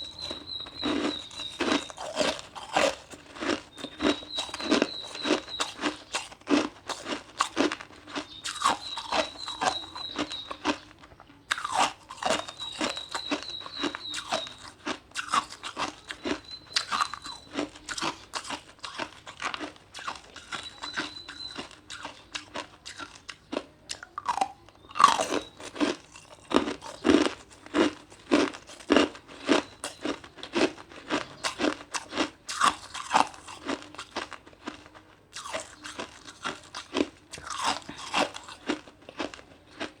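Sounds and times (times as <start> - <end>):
high bird trills: 0.0 - 2.4, 3.7 - 6.1, 8.3 - 10.9, 12.4 - 14.8
ice crunching being chewed: 0.0 - 40.0.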